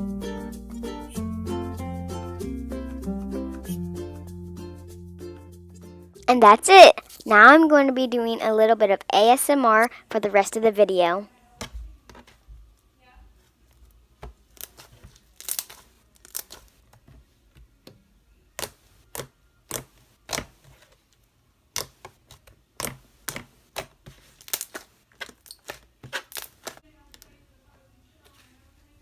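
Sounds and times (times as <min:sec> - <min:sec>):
slime popping and crackling: 0:14.5 - 0:16.8, 0:22.8 - 0:26.8.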